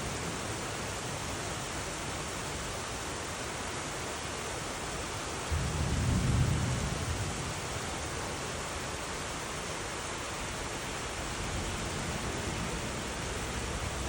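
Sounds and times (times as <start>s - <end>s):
heavy rain hissing: 0.0s - 14.0s
thunder rumble: 5.5s - 7.7s.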